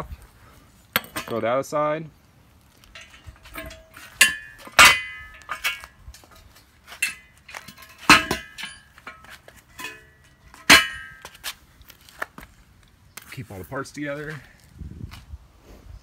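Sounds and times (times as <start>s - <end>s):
steel parts clanking: 2.8s - 11.4s
sharp ringing metallic clanks: 3.0s - 11.3s.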